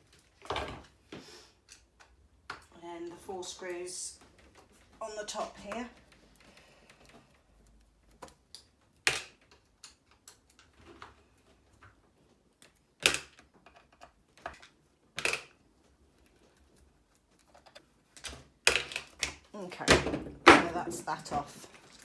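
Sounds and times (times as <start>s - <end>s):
hand tools clicking on plastic parts: 5.5s - 11.2s, 11.8s - 19.5s.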